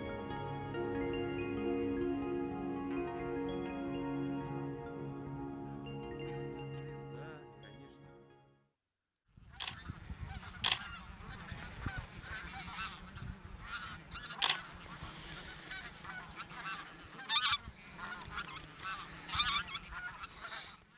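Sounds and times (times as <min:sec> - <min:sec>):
geese honking: 0:09.7 - 0:20.9.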